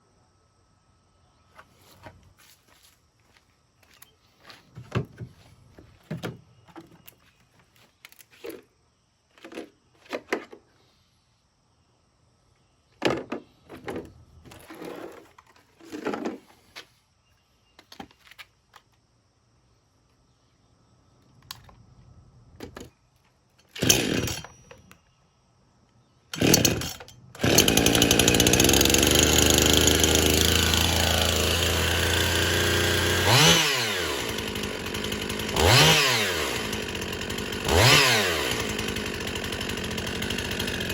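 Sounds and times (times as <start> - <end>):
handling clicks and knocks: 4.7 - 8.6
chainsaw engine running: 23.7 - 24.6, 26.3 - 40.9.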